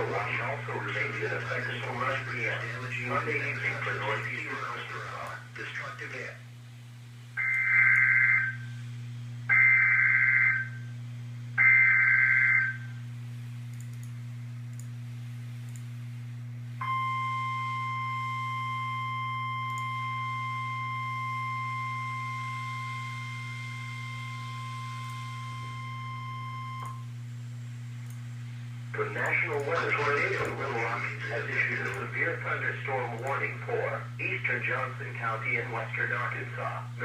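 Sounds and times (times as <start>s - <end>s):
low hum: 0.0s - 37.0s
steady alarm tone: 7.4s - 8.8s, 9.5s - 10.9s, 11.6s - 13.0s, 16.8s - 27.1s.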